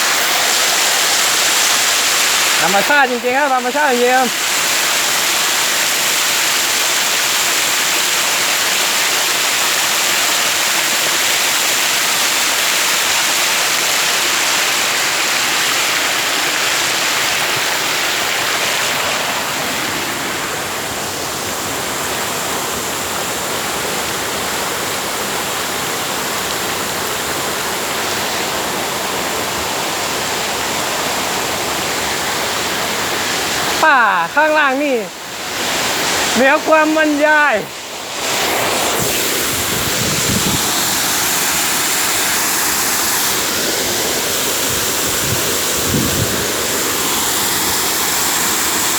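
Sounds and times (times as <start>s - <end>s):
waterfall roaring: 0.0s - 48.9s.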